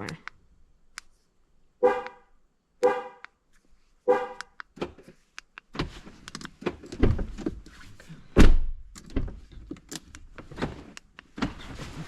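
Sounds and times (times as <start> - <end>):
car horn chirps: 1.8 - 3.3, 4.0 - 4.5.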